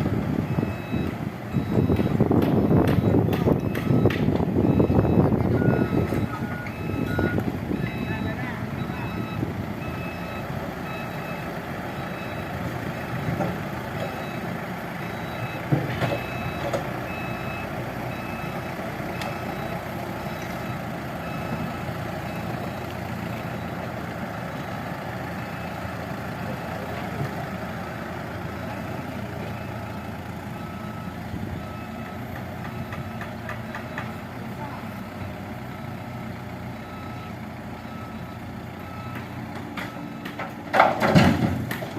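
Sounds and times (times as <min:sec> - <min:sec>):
excavator engine running: 0:00.0 - 0:41.9
loud knocks: 0:40.7 - 0:41.9.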